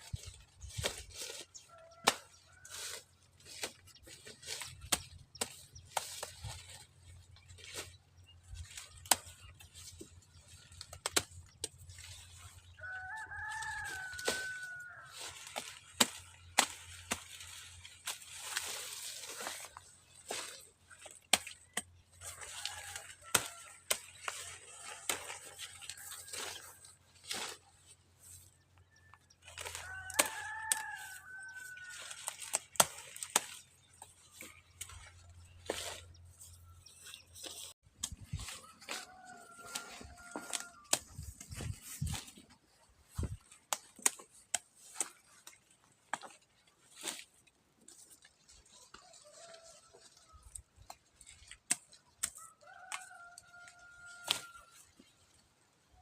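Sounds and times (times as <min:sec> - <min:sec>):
rustling: 0:00.0 - 0:28.6
rooster crowing: 0:12.8 - 0:15.2, 0:29.8 - 0:32.0, 0:38.7 - 0:41.1, 0:52.4 - 0:54.8
sharp snaps and knocks: 0:43.7 - 0:45.1.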